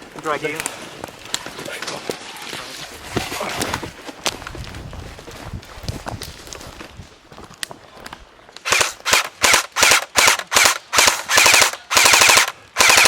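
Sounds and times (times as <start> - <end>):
airsoft gun firing bursts: 8.6 - 13.0.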